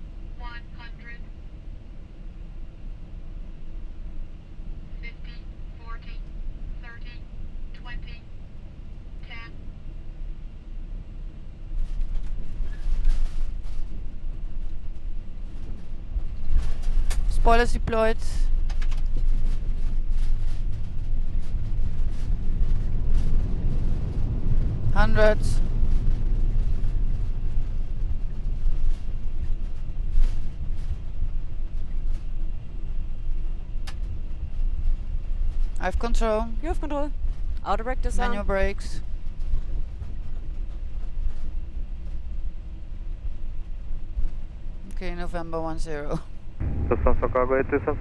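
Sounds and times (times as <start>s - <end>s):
low cockpit rumble: 0.0s - 48.0s
aircraft wheels rolling on runway: 10.9s - 44.8s.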